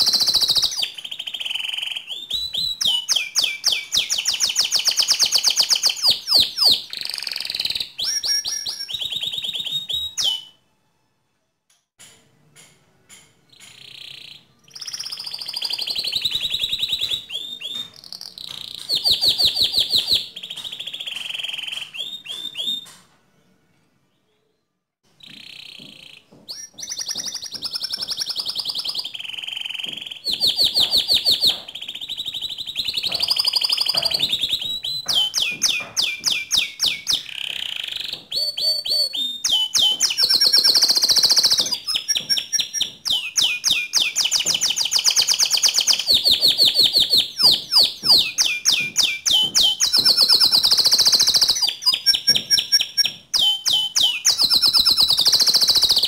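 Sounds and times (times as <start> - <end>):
canary singing trills: 0.0 - 10.6, 13.5 - 23.0, 25.1 - 56.0.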